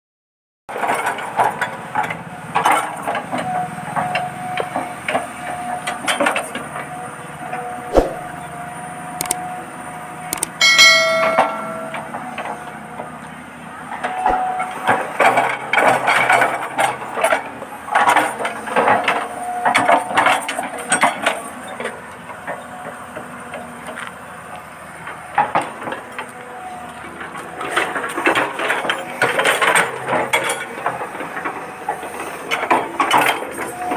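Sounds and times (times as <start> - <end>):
ringing clink: 10.5 - 12.4.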